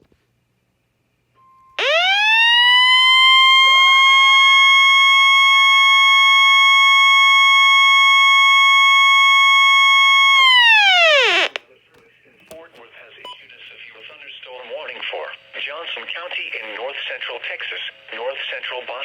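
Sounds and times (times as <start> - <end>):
siren-like alert tones rising: 1.8 - 11.6.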